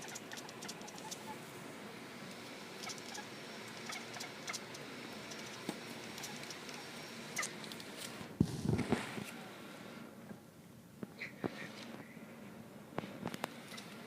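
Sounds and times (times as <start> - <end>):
cat chattering: 0.0 - 1.4, 2.8 - 7.6.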